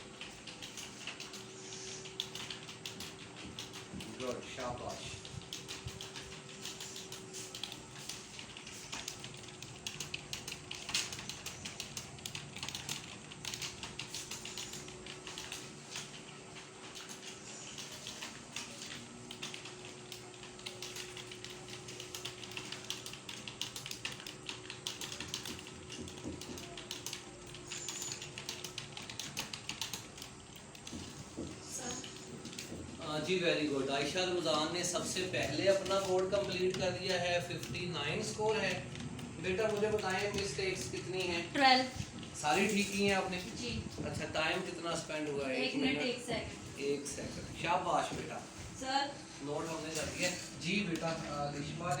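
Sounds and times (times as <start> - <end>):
keyboards clattering: 0.0 - 45.4.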